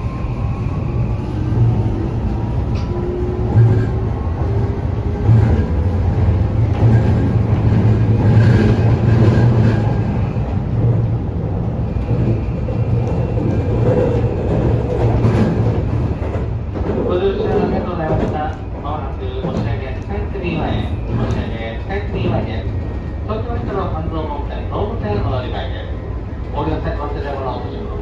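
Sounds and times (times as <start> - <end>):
train wheels rumbling on rail: 0.0 - 28.0.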